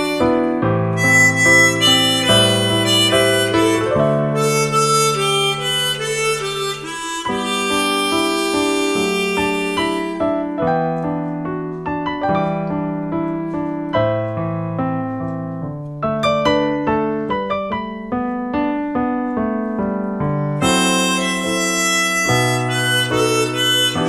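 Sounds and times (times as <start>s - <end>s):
harmonica phrase: 0.0s - 11.0s, 20.5s - 24.0s
piano playing: 0.0s - 24.0s.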